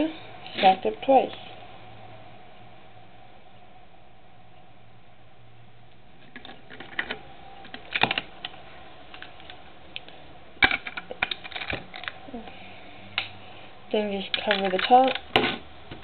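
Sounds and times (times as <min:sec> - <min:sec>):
plastic bricks clicking: 0:14.3 - 0:15.3.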